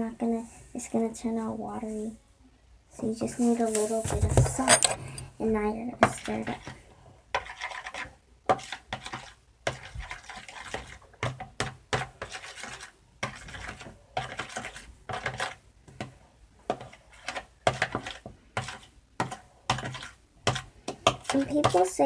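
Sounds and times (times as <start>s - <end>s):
spoon scraping a bowl: 6.0s - 22.0s.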